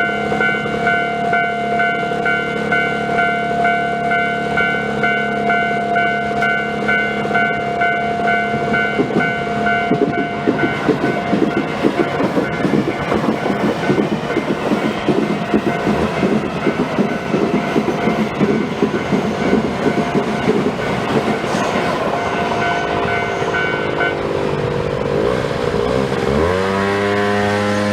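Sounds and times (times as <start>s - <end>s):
level crossing alarm tone: 0.0s - 24.7s
train wheels clattering over rails: 6.4s - 27.2s
engine speeding up: 8.7s - 27.9s.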